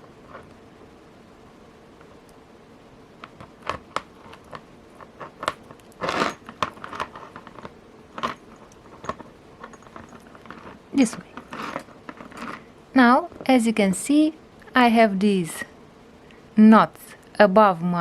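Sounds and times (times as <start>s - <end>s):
thread rustling: 3.4s - 13.6s.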